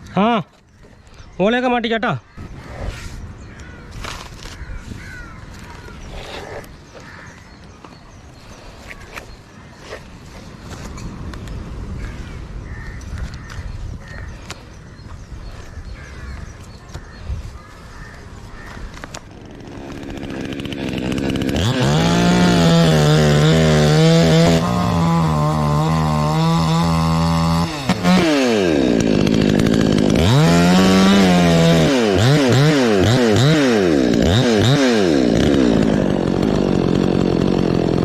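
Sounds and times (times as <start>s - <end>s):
clicks and handling noise: 18.6s - 19.3s
chainsaw engine revving: 18.6s - 38.0s.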